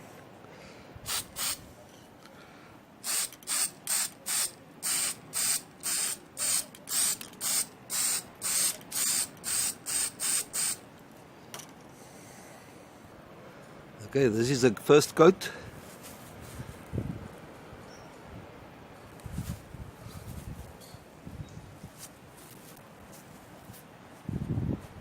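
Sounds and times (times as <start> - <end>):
spray paint can hissing bursts: 1.1 - 1.6, 3.0 - 10.8.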